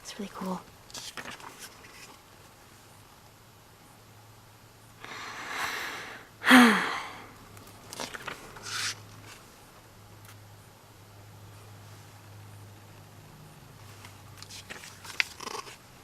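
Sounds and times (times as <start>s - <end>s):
person breathing in: 5.0s - 7.3s
short vocal burst: 5.4s - 7.2s.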